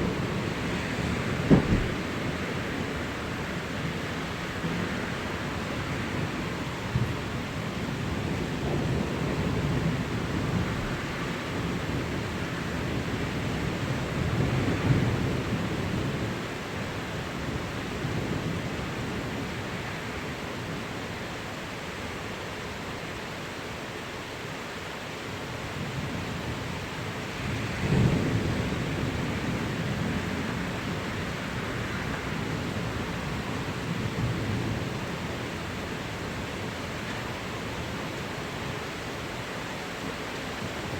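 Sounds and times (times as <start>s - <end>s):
low rolling thunder: 0.0s - 3.5s
steady rain: 0.0s - 40.9s.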